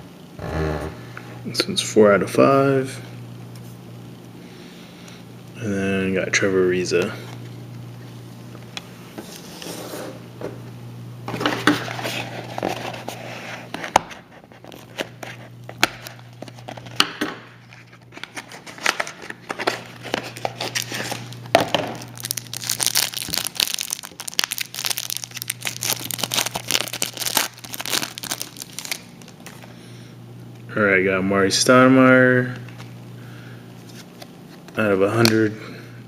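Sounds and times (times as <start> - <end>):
cards being handled: 11.4 - 29.8
foil wrapper tearing and crinkling: 17.9 - 29.7.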